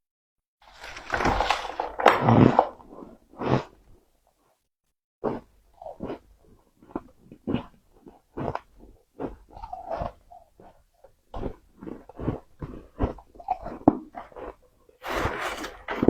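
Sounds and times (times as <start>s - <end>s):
long dense crunch: 0.6s - 3.6s
short chewing crunches: 0.7s - 3.8s, 5.2s - 16.0s.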